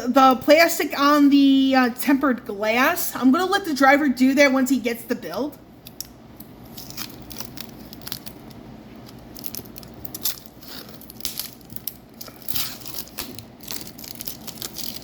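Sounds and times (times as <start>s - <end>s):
plastic film peeling and crinkling: 6.6s - 15.0s.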